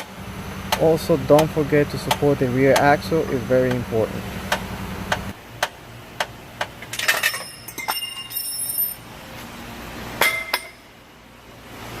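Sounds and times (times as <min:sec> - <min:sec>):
metal clinking with ringing: 0:06.9 - 0:09.1, 0:10.2 - 0:10.9.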